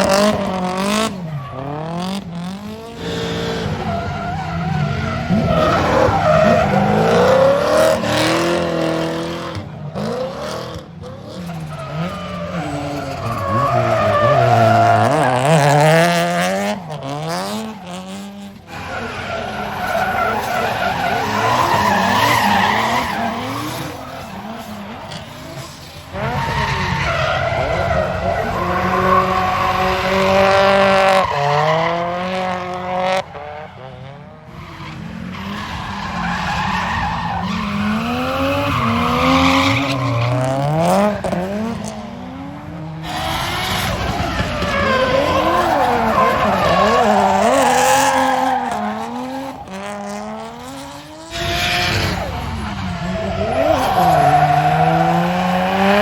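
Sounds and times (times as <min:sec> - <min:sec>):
car engines revving: 0:00.0 - 0:56.0
tyres squealing: 0:43.8 - 0:49.6, 0:51.3 - 0:55.3.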